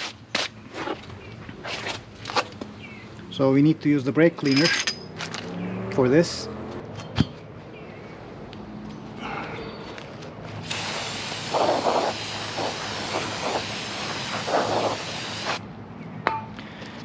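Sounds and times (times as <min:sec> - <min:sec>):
aerosol spray hissing: 0:10.7 - 0:15.6.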